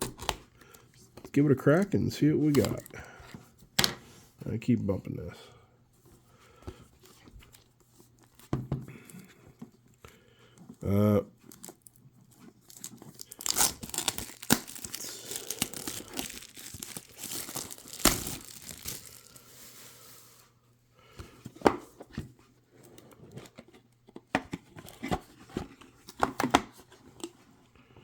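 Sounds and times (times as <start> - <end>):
packaging tearing and crinkling: 2.5 - 2.9, 12.6 - 19.8
packaging crackles and taps: 2.5 - 3.0, 12.6 - 19.4.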